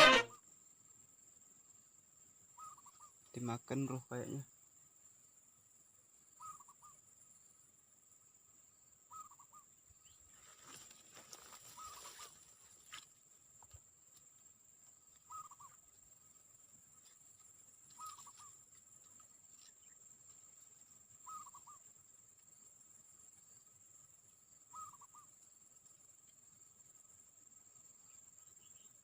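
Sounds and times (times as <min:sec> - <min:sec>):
high-pitched insect drone: 0:00.0 - 0:00.4
faint warbling bird calls: 0:02.6 - 0:03.2, 0:06.4 - 0:07.0, 0:09.1 - 0:10.2, 0:11.5 - 0:12.6, 0:15.2 - 0:15.8, 0:18.0 - 0:18.6, 0:21.2 - 0:21.9, 0:24.7 - 0:25.3.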